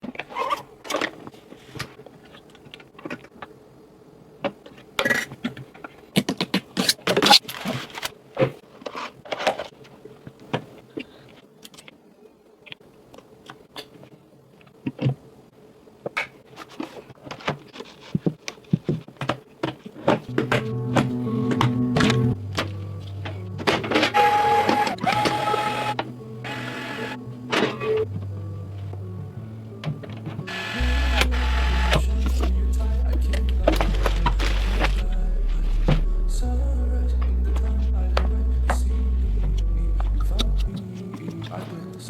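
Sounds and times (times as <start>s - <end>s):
music: 20.3s - 42.0s.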